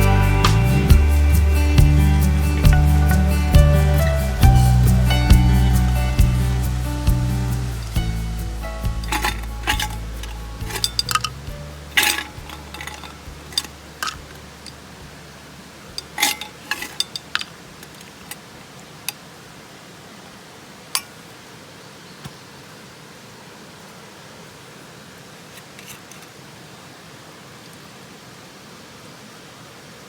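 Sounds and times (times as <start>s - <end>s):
small objects clinking: 0.0s - 14.8s, 16.0s - 17.6s
faint hiss: 0.0s - 30.0s.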